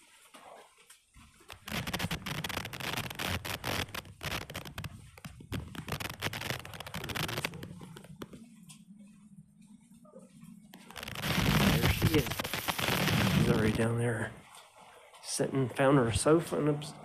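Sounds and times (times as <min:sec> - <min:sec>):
scraping and crackling on microphone: 0:01.3 - 0:08.9, 0:10.1 - 0:14.2.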